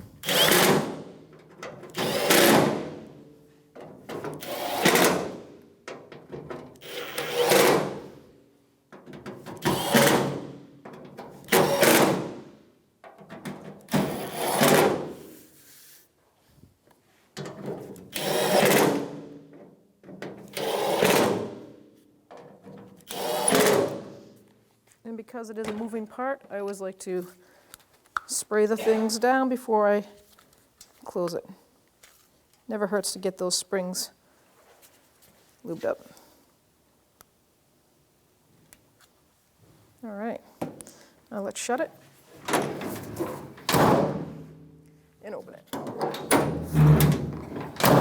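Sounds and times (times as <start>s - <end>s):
power driver whirring: 0.2s - 0.9s, 1.9s - 2.6s, 4.4s - 5.1s, 6.8s - 7.7s, 18.1s - 19.0s, 20.5s - 21.4s, 23.1s - 23.9s.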